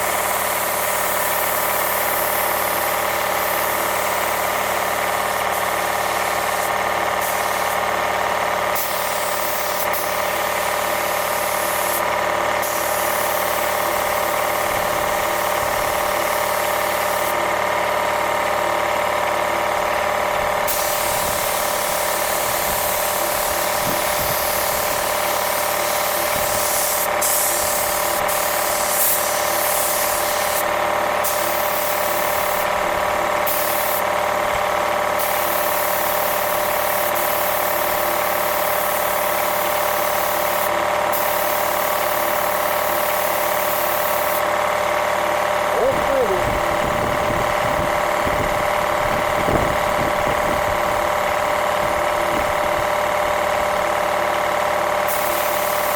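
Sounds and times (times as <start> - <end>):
spray gun hissing: 0.0 - 7.8, 8.8 - 14.6, 20.7 - 32.6
air compressor running: 0.0 - 55.9.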